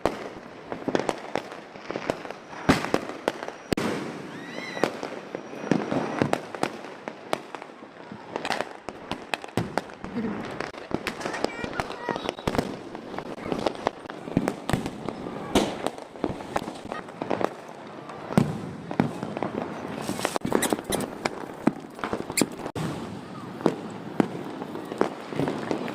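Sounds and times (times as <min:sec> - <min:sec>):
firecrackers banging and popping: 0:00.0 - 0:25.9.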